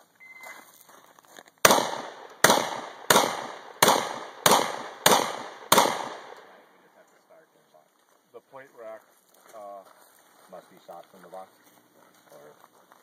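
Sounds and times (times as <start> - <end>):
shotgun shots with echo: 1.6 - 6.6.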